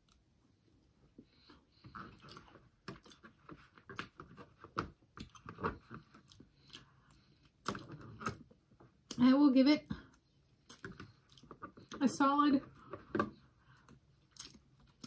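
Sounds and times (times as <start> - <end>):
person chewing: 1.4 - 4.5, 5.1 - 8.4, 10.2 - 12.0, 13.8 - 15.0.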